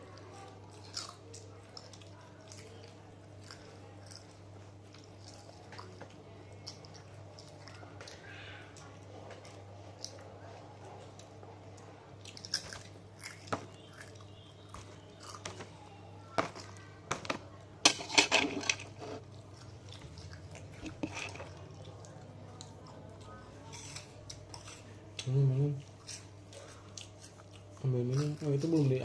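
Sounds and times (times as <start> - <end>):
crunchy snacks being chewed: 0.6 - 10.3, 11.1 - 15.7.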